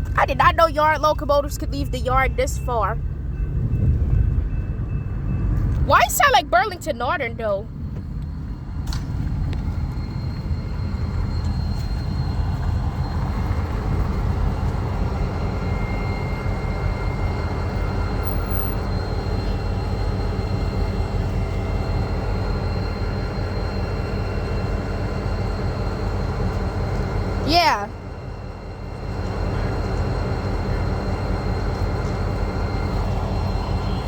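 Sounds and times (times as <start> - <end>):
diesel locomotives rumbling: 0.0 - 34.0
faint high whine: 0.0 - 34.0.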